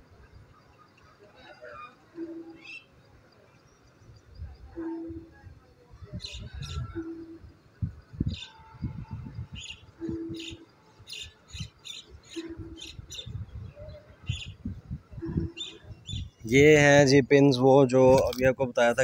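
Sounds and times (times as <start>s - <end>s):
small birds chirping: 6.0s - 16.6s.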